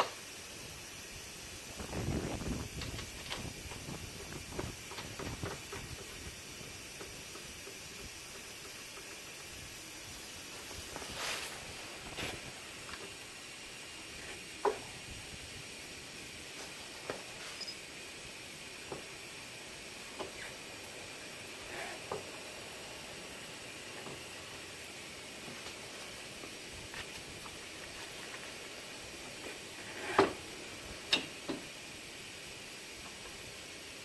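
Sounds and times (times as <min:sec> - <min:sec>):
steady hiss: 0:00.0 - 0:34.0
tools clinking on metal parts: 0:17.5 - 0:17.8.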